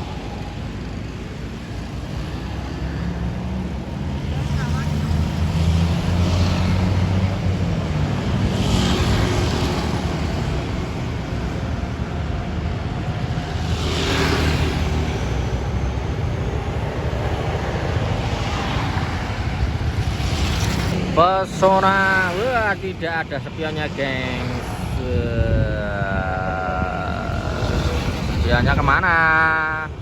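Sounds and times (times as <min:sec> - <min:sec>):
large vehicle engine humming: 0:00.0 - 0:30.0
vehicles passing by: 0:00.0 - 0:30.0.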